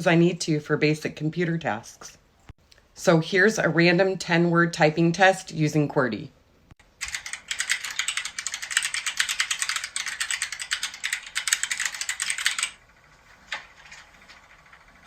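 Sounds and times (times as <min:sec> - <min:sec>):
fast keyboard typing: 0:06.8 - 0:12.8.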